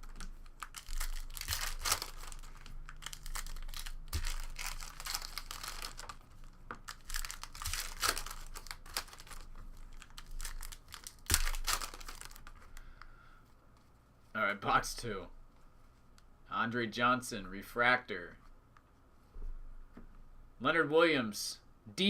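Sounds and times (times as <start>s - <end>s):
foil wrappers crinkling and tearing: 0.0s - 12.8s
cards rustling: 0.0s - 13.1s.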